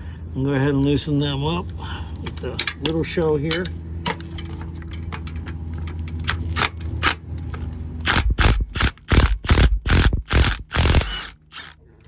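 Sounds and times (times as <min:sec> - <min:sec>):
low hum: 0:03.6 - 0:12.0
ratchet wrench strokes: 0:08.0 - 0:11.8.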